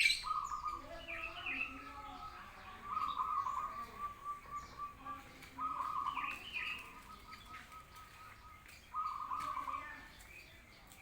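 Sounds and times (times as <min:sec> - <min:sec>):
dove cooing in trilled phrases: 0:02.8 - 0:09.8.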